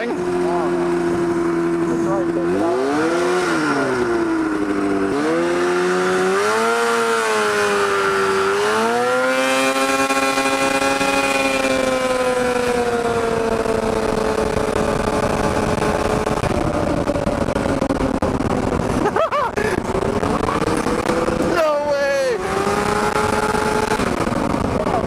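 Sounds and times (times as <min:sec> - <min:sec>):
two-stroke engine accelerating: 0:00.0 - 0:25.0.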